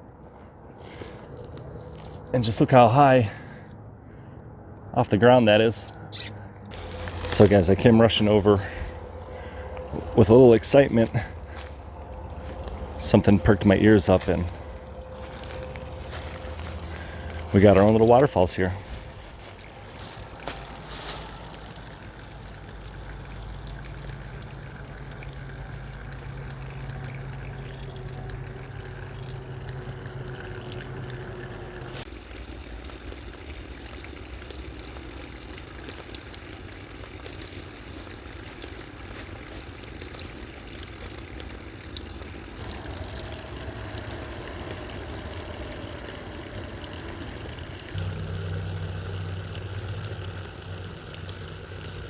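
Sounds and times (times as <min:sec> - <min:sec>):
highway traffic drone: 0:00.0 - 0:52.0
small waterfall splashing: 0:19.2 - 0:30.1, 0:32.0 - 0:52.0.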